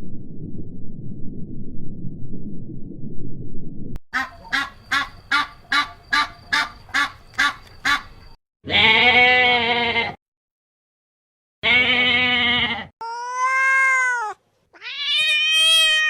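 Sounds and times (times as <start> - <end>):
waterfowl honking: 4.2 - 8.2.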